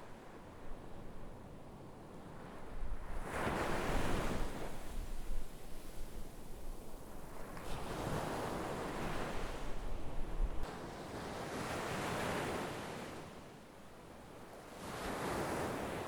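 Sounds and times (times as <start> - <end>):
sea waves breaking on shore: 14.7 - 16.0.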